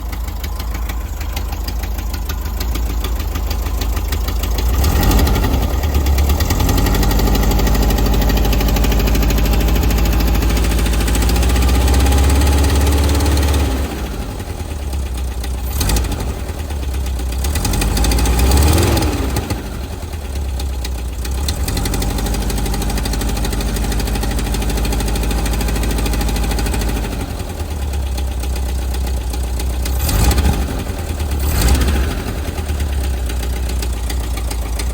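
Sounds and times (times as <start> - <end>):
car engine revving with knock: 29.7 - 34.9.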